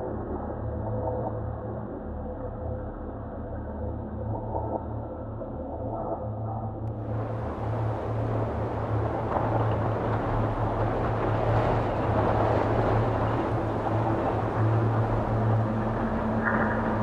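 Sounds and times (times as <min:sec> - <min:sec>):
dark ambient drone: 0:00.0 - 0:17.0
low hum: 0:06.8 - 0:17.0
steady rushing rumble: 0:06.9 - 0:17.0.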